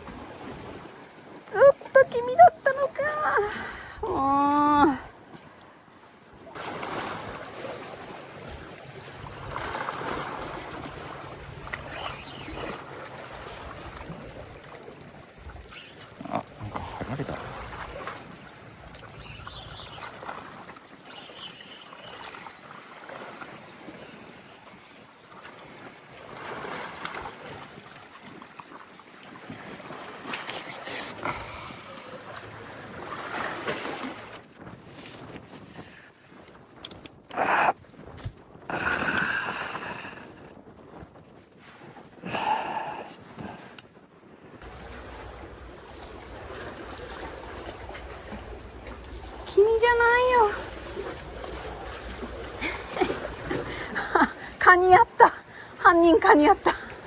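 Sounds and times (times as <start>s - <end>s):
sea water washing among blocks: 6.4s - 36.3s, 44.6s - 57.0s
wind rumble on microphone: 34.3s - 54.6s
wave surge and splash: 44.6s - 54.6s.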